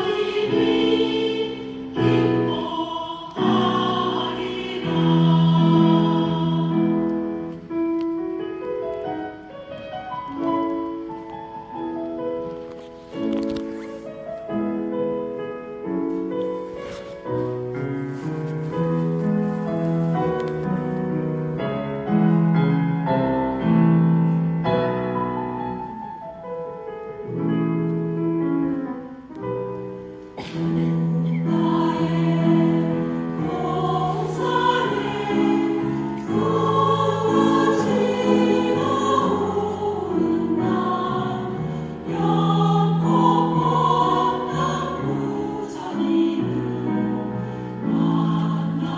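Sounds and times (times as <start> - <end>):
choir singing a hymn: 0.0 - 7.6, 30.7 - 48.9.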